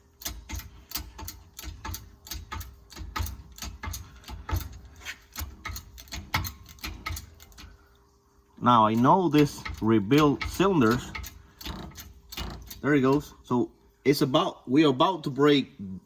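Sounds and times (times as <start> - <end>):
metallic clicks and knocks: 0.0 - 7.8, 8.8 - 13.5
faint steady hum: 0.0 - 16.0.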